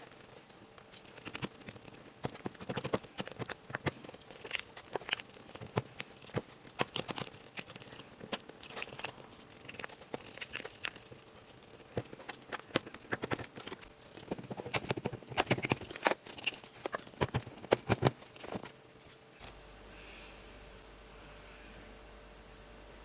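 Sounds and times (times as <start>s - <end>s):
hands handling a plastic toy kit: 0.0s - 18.8s.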